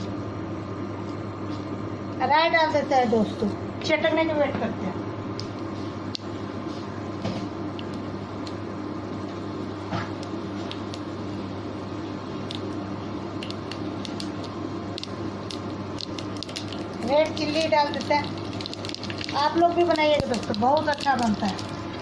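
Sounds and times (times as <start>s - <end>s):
steady hum: 0.0s - 22.0s
mustard seeds popping in oil: 7.7s - 9.2s, 10.0s - 11.2s, 12.3s - 22.0s.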